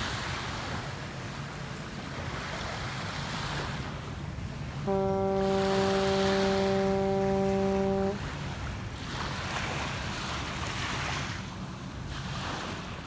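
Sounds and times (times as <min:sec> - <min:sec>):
waves washing on shore: 0:00.0 - 0:13.0
steady horn note: 0:04.8 - 0:08.3.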